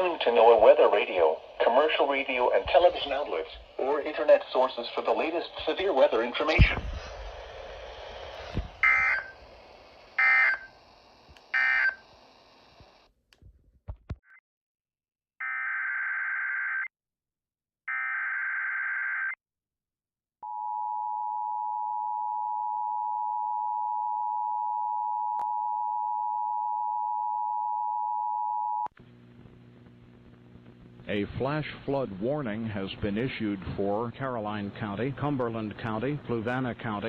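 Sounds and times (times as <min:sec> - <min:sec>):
screeching data bursts: 0:08.8 - 0:09.5, 0:10.1 - 0:10.8, 0:11.5 - 0:12.1.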